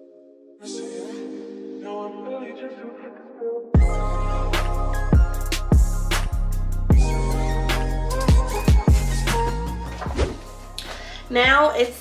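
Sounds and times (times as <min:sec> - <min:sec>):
hip-hop beat with bass kicks: 0:03.8 - 0:09.6.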